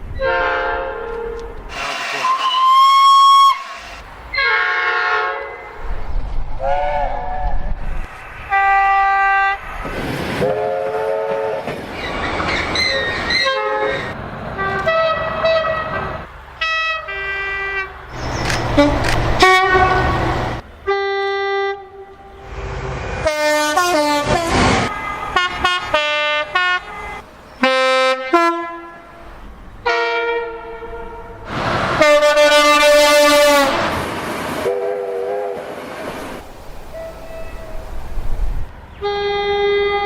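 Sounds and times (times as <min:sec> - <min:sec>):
train horns: 0:00.1 - 0:06.0, 0:06.6 - 0:07.8, 0:08.4 - 0:11.8, 0:12.8 - 0:35.8, 0:36.9 - 0:37.9, 0:39.0 - 0:40.0
rushing noise: 0:01.7 - 0:04.4, 0:18.0 - 0:20.7, 0:22.3 - 0:26.1, 0:31.0 - 0:38.9.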